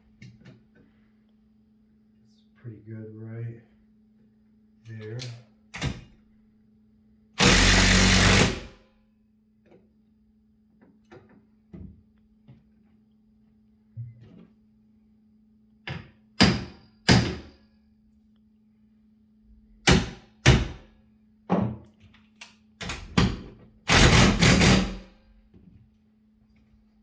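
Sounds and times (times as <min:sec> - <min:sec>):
rattling burst: 0:07.4 - 0:08.7, 0:23.9 - 0:25.0.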